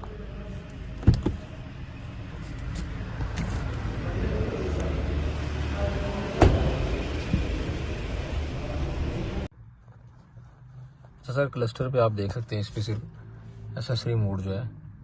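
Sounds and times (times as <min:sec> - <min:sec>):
car engine idling: 0:00.0 - 0:09.5.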